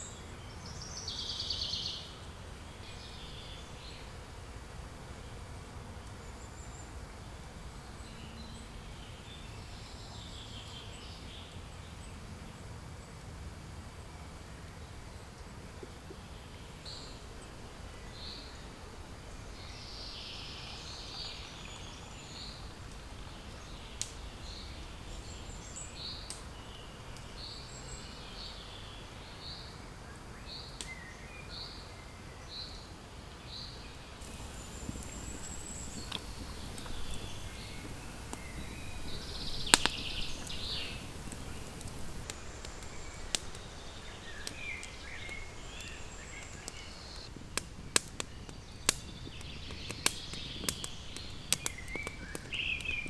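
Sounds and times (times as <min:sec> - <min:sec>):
light clicks: 0:34.2 - 0:42.3
small bird chirping: 0:34.2 - 0:42.3.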